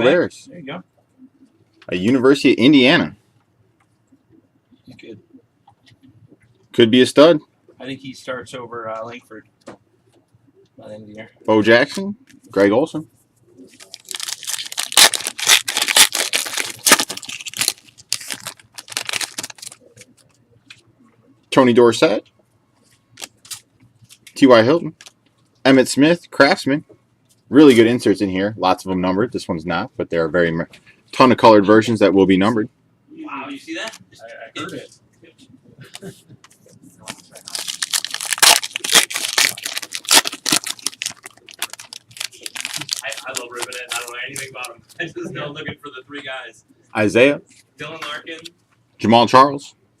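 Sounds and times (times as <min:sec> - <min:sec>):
foil wrapper crinkling and tearing: 0:13.7 - 0:20.1, 0:37.0 - 0:44.5.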